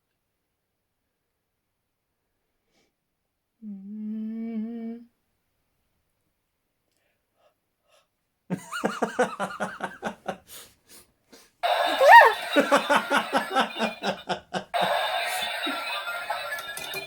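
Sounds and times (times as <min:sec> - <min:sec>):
person laughing in breathy bursts: 0:08.6 - 0:10.7, 0:11.9 - 0:15.4.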